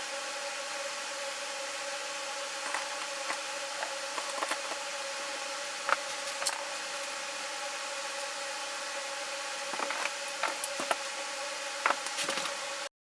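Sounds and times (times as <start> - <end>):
background hum and hiss: 0.0 - 12.9.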